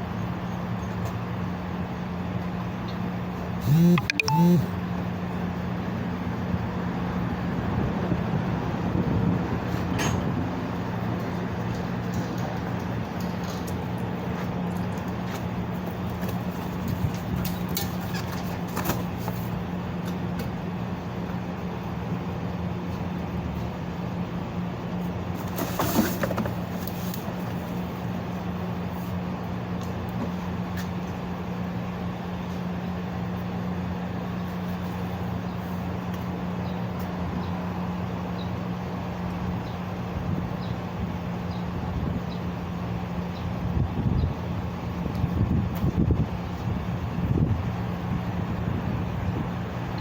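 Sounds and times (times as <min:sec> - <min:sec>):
motor humming: 0:03.6 - 0:04.8.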